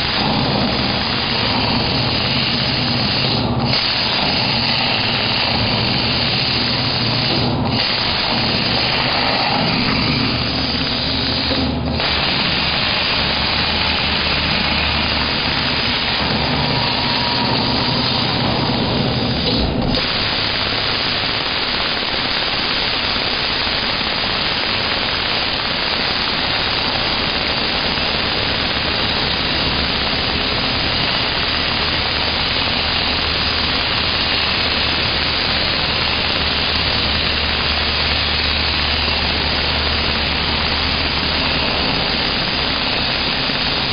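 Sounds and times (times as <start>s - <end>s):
low machine hum: 0.0s - 21.0s
plasma cutter hissing: 0.0s - 43.9s.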